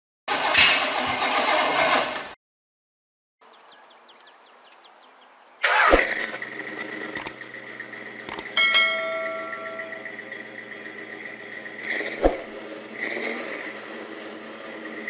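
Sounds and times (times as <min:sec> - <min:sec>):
car engine starting and running: 0:00.3 - 0:02.4, 0:05.6 - 0:15.0
sharp clicks: 0:07.1 - 0:07.4, 0:08.2 - 0:08.6.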